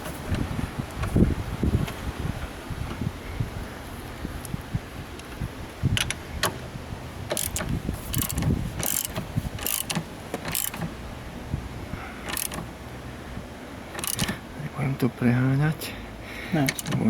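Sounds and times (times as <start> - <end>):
metallic ratchet clicks: 7.3 - 11.0, 12.3 - 12.7, 14.0 - 14.4.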